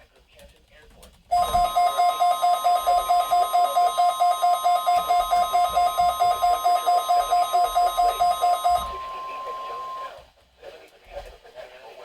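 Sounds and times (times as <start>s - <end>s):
fast beeping alarm: 1.3s - 10.2s
steady high alert tone: 1.3s - 10.2s.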